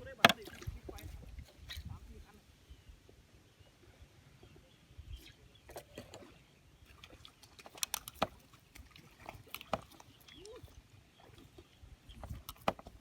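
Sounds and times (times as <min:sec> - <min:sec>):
wind rumbling on microphone: 0:00.0 - 0:03.2, 0:10.3 - 0:13.0.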